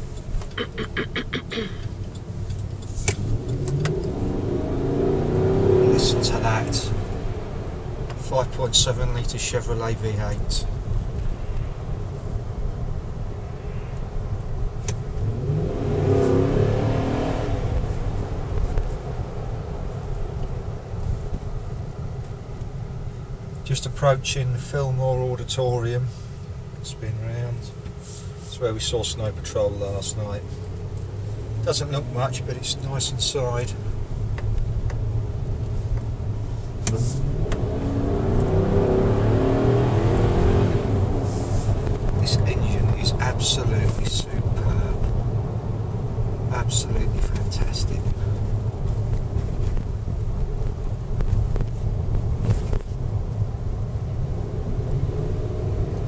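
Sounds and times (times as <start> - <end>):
car engine revving: 0.4 - 12.0, 14.6 - 21.1, 28.8 - 56.0.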